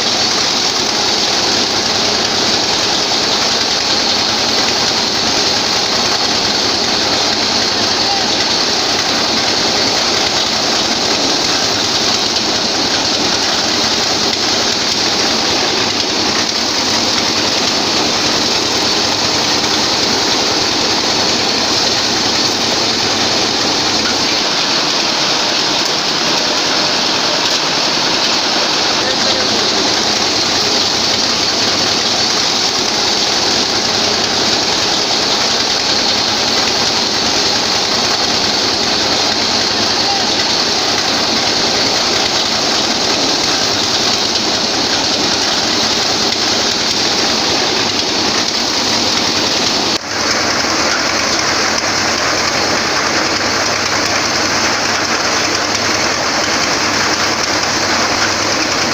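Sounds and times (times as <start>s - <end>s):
thresher drum clattering: 0.0s - 58.9s.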